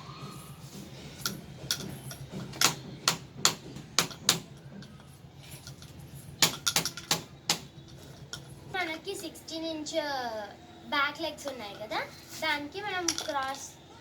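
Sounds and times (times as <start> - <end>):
plastic pipes knocking together: 1.2 - 4.9, 6.4 - 8.5.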